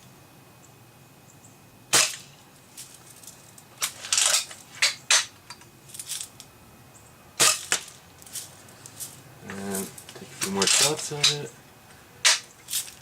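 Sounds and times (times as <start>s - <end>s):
air rifle shots: 1.9s - 2.3s.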